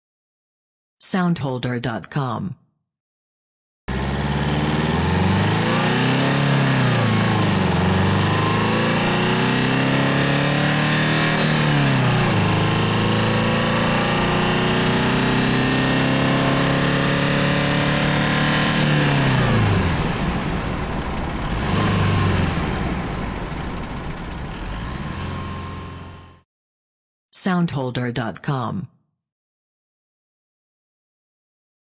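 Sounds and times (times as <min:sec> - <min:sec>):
diesel engine accelerating: 0:03.9 - 0:26.4.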